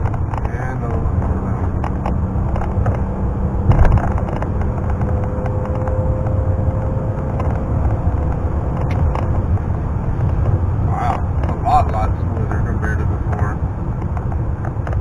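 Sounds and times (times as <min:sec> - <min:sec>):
faint engine whine: 0:00.0 - 0:15.0
road and wind rumble: 0:00.0 - 0:15.0
car bump: 0:03.6 - 0:05.9.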